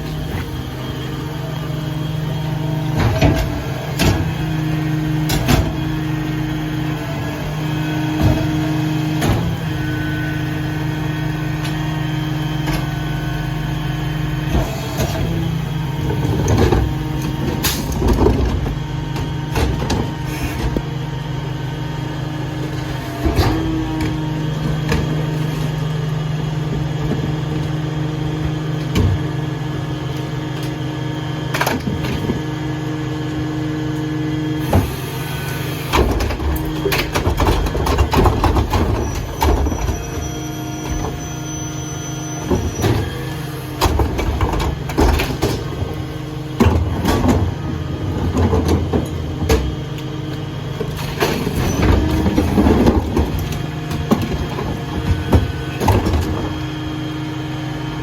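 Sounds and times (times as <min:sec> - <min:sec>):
garbage truck humming: 0:00.0 - 0:58.0.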